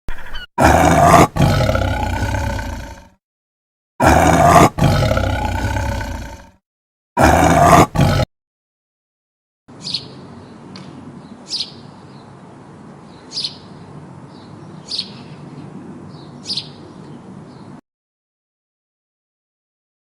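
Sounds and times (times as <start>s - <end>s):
bird chirping: 0.1s - 0.5s, 9.7s - 17.8s.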